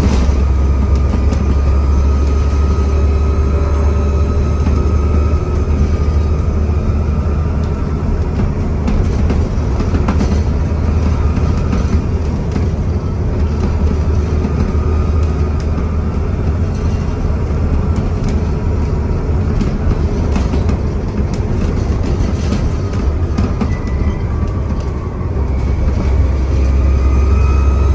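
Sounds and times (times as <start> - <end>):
bus engine drone: 0.0 - 27.9
faint turbocharger whistle: 25.4 - 27.9.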